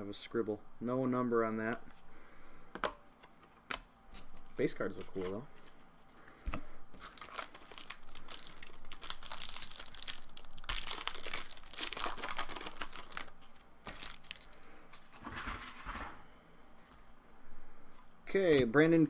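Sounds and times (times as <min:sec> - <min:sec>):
cards rustling: 0:03.2 - 0:15.7
foil wrapper crinkling and tearing: 0:07.0 - 0:14.6.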